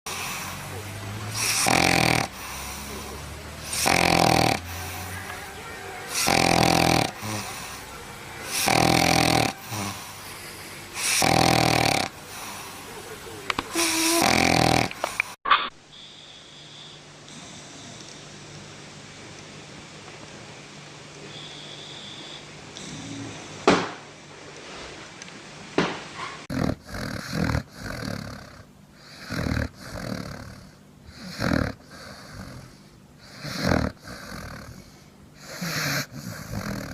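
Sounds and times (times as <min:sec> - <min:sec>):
dog snoring: 0:00.1 - 0:05.1, 0:06.1 - 0:07.8, 0:08.5 - 0:12.8, 0:13.7 - 0:15.2, 0:21.4 - 0:23.6, 0:26.5 - 0:36.9
quiet hiss: 0:00.1 - 0:26.5.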